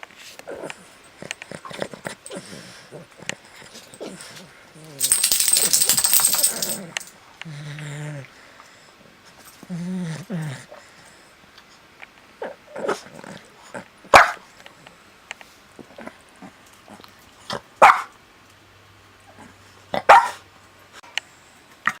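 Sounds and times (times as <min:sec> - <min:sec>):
dog barking: 0:14.1 - 0:14.4, 0:17.8 - 0:18.1, 0:20.0 - 0:20.4.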